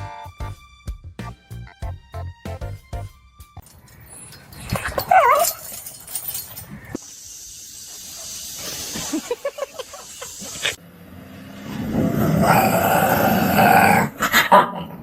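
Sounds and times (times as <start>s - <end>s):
dog whining and yipping: 4.7s - 5.8s.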